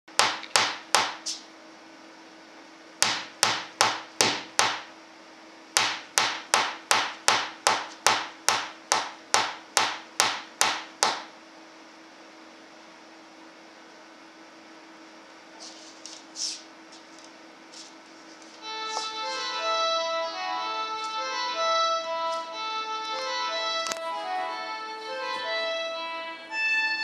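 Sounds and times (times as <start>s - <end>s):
faint steady hum: 0.1s - 27.0s
knocking on wood: 3.0s - 4.9s, 5.8s - 11.3s.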